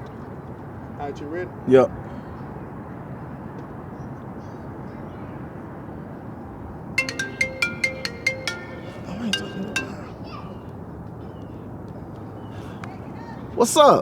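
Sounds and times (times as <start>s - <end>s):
mobile phone ringtone: 7.0s - 10.1s.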